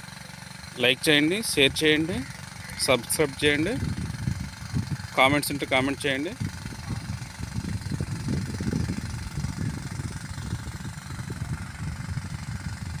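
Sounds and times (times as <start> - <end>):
engine rumbling: 0.0 - 13.0.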